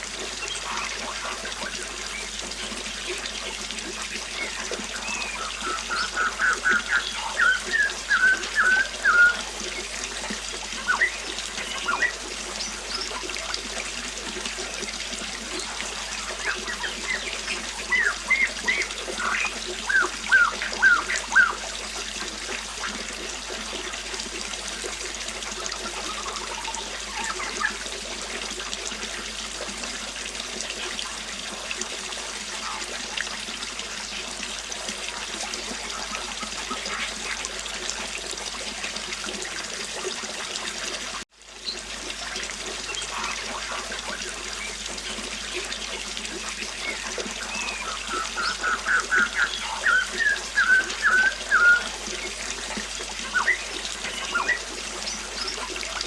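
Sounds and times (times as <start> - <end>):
river water flowing: 0.0 - 56.0
birds singing: 0.3 - 13.4, 14.6 - 21.7, 25.8 - 27.8, 32.5 - 33.4, 42.8 - 45.7, 46.5 - 56.0.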